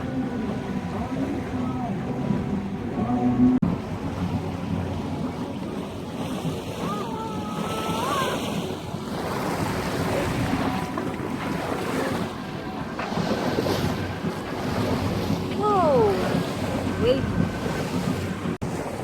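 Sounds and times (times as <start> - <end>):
water rushing along hull: 0.0 - 19.0
wind buffeting microphone: 0.0 - 19.0.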